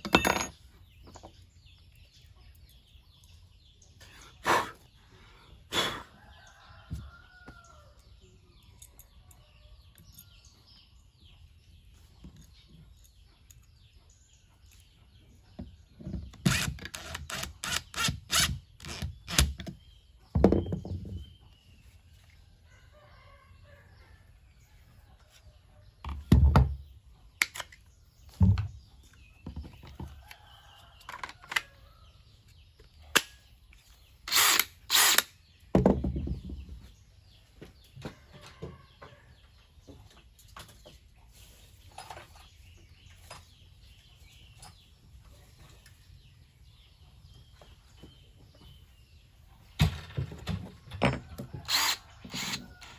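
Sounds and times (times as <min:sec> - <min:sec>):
distant rooster crowing: 0:06.0 - 0:08.0.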